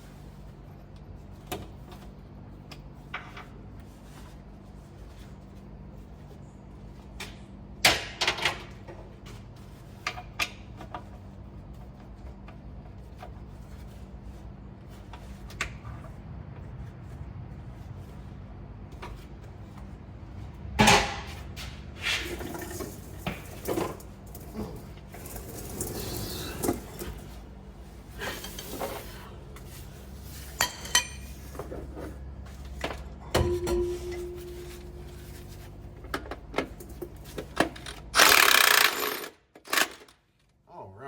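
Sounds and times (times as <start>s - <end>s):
steady low hum: 9.0s - 38.1s
tools and steel parts clanking: 30.5s - 31.8s, 33.2s - 35.4s.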